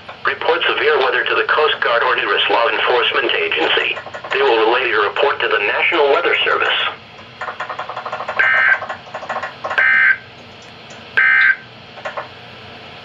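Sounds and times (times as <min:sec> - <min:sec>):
rapid rattling buzz: 0:03.2 - 0:05.1, 0:05.9 - 0:12.4
harsh electronic buzzes: 0:08.2 - 0:09.0, 0:09.7 - 0:10.3, 0:11.1 - 0:11.8.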